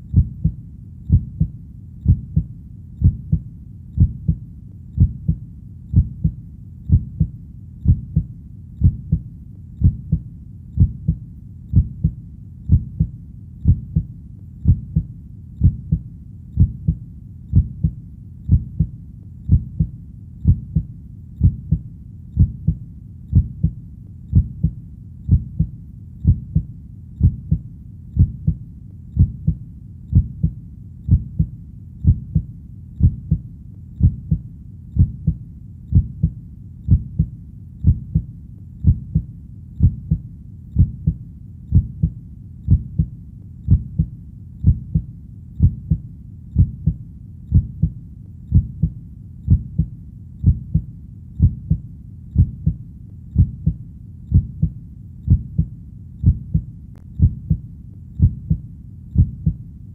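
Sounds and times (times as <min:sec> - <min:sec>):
heartbeat thumping: 0:00.0 - 0:21.8, 0:22.4 - 0:59.6
faint low rumble: 0:00.0 - 0:59.9.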